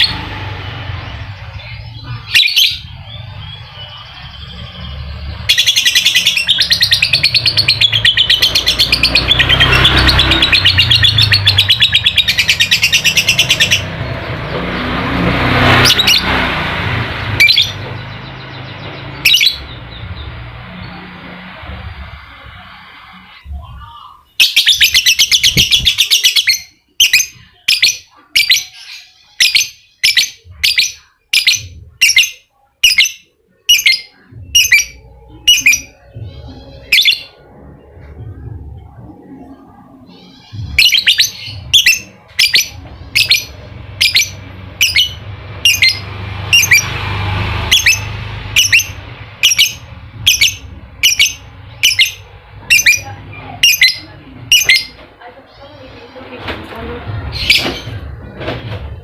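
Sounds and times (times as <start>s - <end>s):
bird chattering and chirping: 0.0s - 14.5s, 38.2s - 47.0s, 47.7s - 56.2s.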